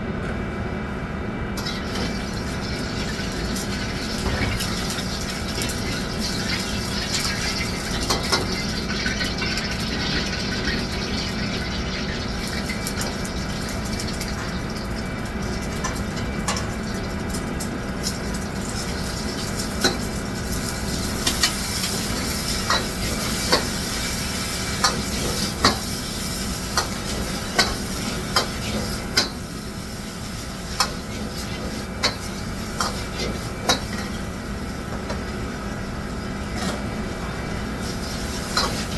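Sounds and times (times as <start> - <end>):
food sizzling in a pan: 18.0 - 34.4, 37.7 - 38.9.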